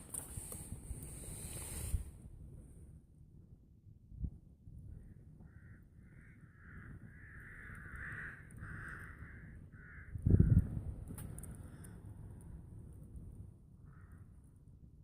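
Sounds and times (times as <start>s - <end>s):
crow cawing: 5.0s - 10.6s, 13.8s - 14.3s.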